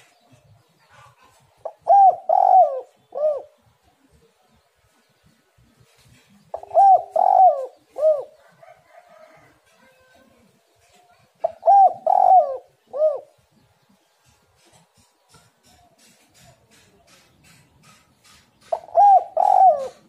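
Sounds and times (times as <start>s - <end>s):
dove cooing: 0.9s - 3.8s, 6.5s - 10.1s, 10.8s - 13.4s, 18.6s - 20.0s.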